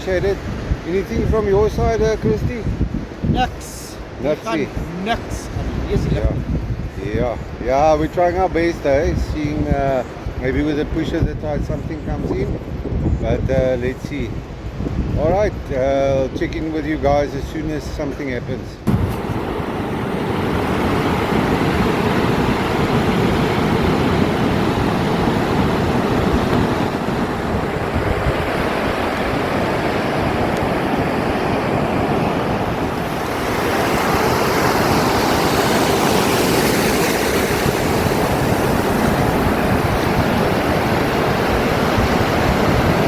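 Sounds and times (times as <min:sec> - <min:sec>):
wind buffeting microphone: 0:00.0 - 0:43.0
surf washing on shore: 0:18.9 - 0:43.0.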